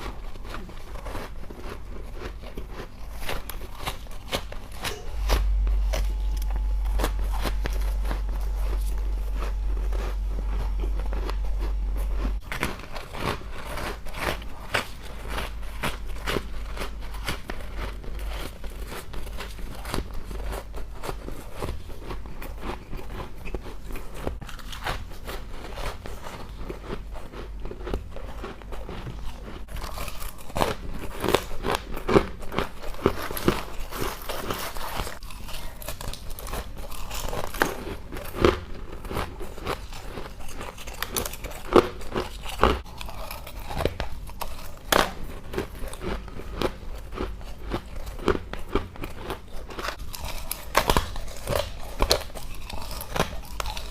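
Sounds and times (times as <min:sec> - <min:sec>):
low rumble: 0:04.9 - 0:13.0.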